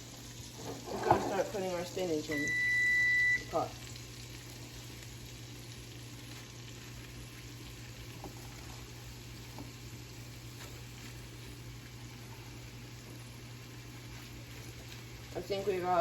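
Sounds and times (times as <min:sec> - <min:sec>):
butter sizzling in a pot: 0:00.0 - 0:16.0.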